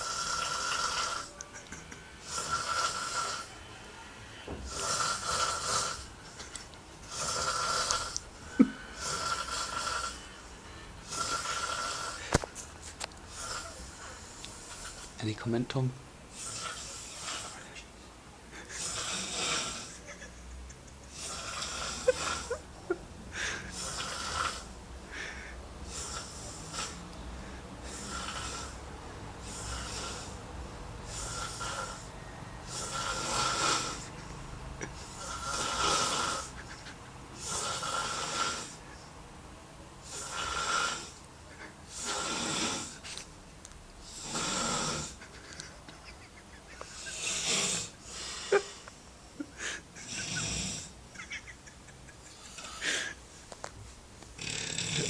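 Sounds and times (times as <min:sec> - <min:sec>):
man snoring heavily: 0:00.0 - 0:01.4, 0:02.2 - 0:03.5, 0:04.6 - 0:06.2, 0:07.0 - 0:10.2, 0:11.0 - 0:12.4, 0:13.3 - 0:15.2, 0:16.3 - 0:17.6, 0:18.7 - 0:20.0, 0:21.1 - 0:22.6, 0:23.4 - 0:27.1, 0:27.8 - 0:28.8, 0:29.4 - 0:34.2, 0:35.0 - 0:36.6, 0:37.4 - 0:38.8, 0:40.0 - 0:41.2, 0:41.9 - 0:43.0, 0:44.0 - 0:45.2, 0:47.0 - 0:48.8, 0:49.6 - 0:51.0, 0:52.4 - 0:53.2, 0:54.4 - 0:55.0.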